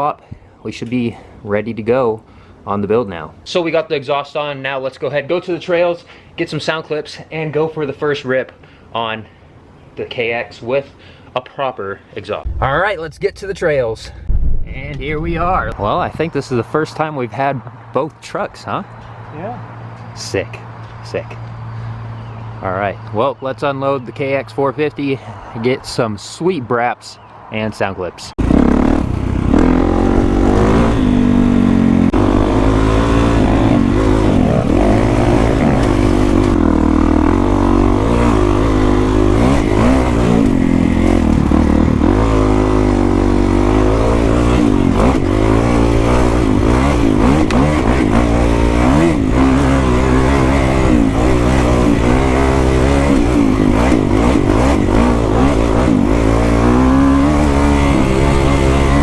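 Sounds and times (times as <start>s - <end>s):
motorcycle engine revving: 28.4s - 59.0s.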